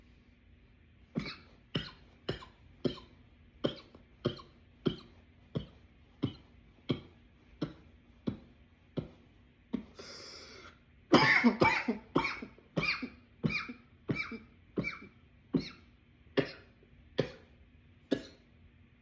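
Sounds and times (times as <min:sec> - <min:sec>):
man coughing: 0:01.2 - 0:08.4, 0:11.1 - 0:15.8.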